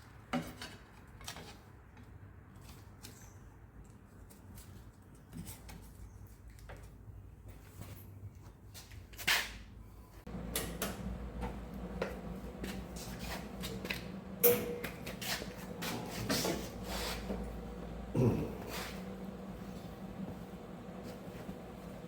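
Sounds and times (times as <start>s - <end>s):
steady low hum: 10.3s - 22.0s.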